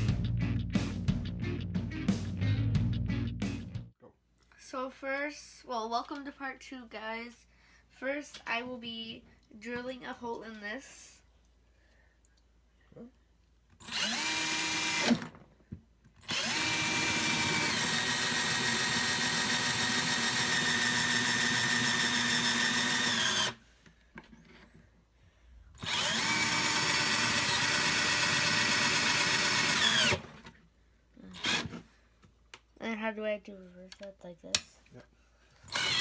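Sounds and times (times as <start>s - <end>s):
electric drill boring: 13.8s - 15.4s, 16.2s - 23.6s, 25.8s - 30.5s, 31.4s - 31.8s, 35.7s - 36.0s.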